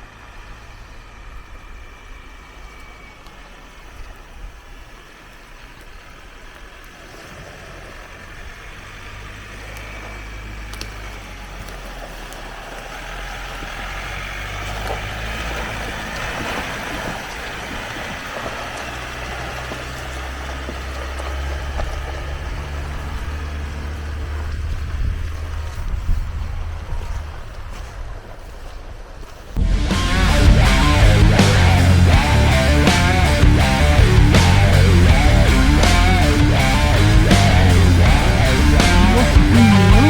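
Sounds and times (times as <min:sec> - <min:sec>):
vehicle engine drone: 0:00.0 - 0:40.0
rush of noise: 0:29.6 - 0:40.0.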